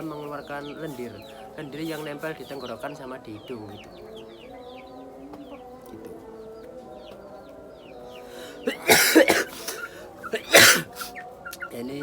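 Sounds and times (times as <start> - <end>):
chicks peeping: 0.0 - 8.7, 9.5 - 12.0
man coughing: 8.6 - 11.2.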